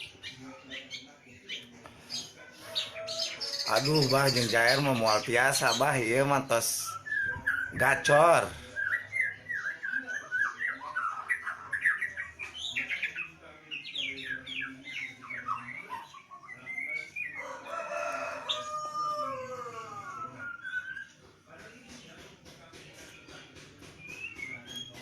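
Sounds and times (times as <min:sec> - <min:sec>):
songbird whistling: 0:06.8 - 0:08.0, 0:08.6 - 0:13.4, 0:20.1 - 0:21.2, 0:23.9 - 0:25.0
rooster-like crow: 0:17.4 - 0:20.4.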